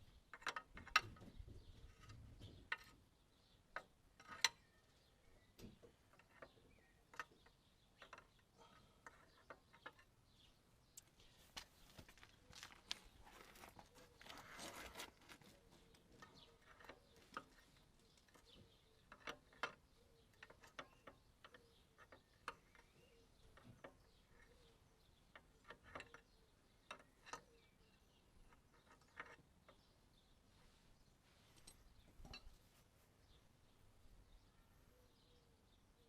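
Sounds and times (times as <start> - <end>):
spanner clicking on steel bolt: 18.2 - 22.9.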